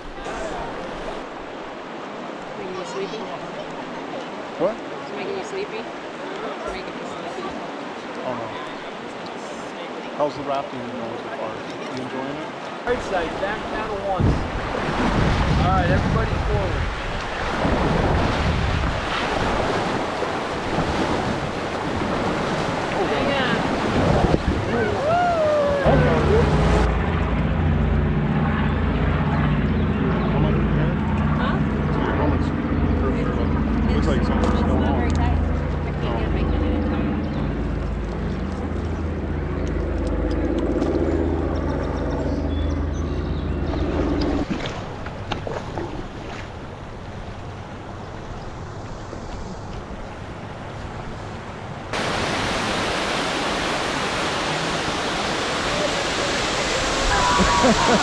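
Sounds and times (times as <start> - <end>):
rushing whitewater: 0.0 - 27.2, 49.9 - 58.0
wind buffeting microphone: 13.9 - 27.5
engine running steadily: 25.8 - 46.0.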